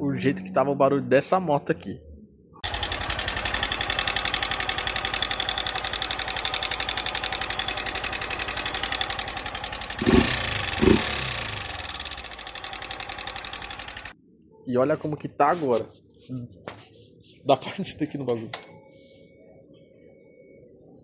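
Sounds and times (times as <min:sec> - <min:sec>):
motorcycle engine revving: 0:02.6 - 0:14.1
motorcycle engine idling with clatter: 0:02.6 - 0:14.2.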